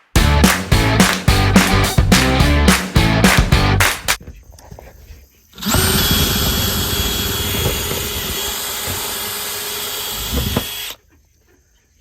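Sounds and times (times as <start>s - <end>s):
power drill boring into wall: 5.6s - 11.0s.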